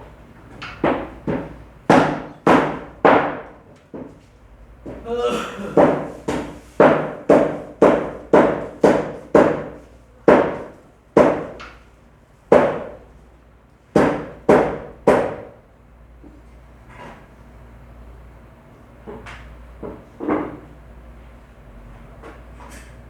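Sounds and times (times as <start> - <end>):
cleaver chopping meat on wood: 0.7 - 4.1, 5.8 - 11.7, 12.5 - 13.0, 14.0 - 15.5.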